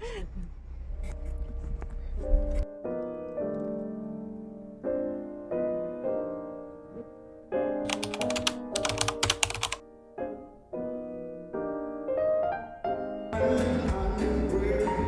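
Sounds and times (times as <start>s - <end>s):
soft piano music: 0.7s - 15.0s
keyboard typing: 7.9s - 9.8s
music with bass beat: 13.4s - 15.0s.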